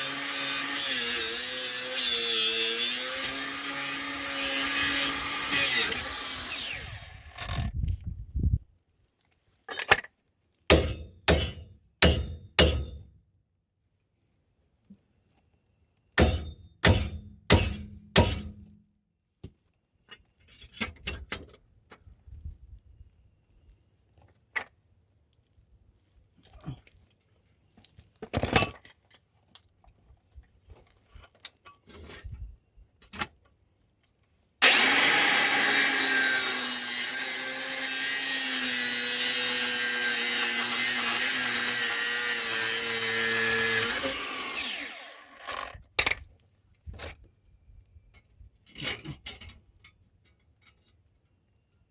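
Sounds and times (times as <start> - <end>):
power tool cutting metal: 0.0 - 7.7, 34.6 - 45.8
metal-on-metal strikes: 10.7 - 13.0, 16.2 - 18.6.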